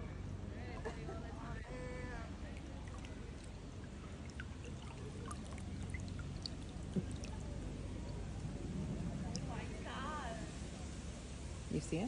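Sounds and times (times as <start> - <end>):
water trickling and dripping: 2.2 - 10.9.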